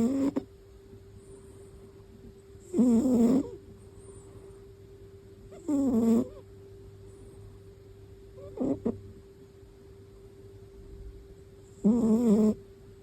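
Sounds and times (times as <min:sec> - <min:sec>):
cat snoring: 0:00.0 - 0:00.5, 0:02.6 - 0:04.4, 0:05.5 - 0:06.4, 0:08.4 - 0:09.0, 0:11.7 - 0:12.6.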